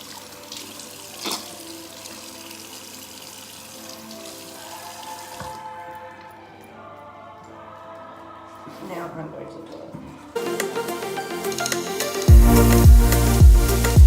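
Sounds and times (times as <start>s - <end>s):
tap running into sink: 1.2s - 1.6s.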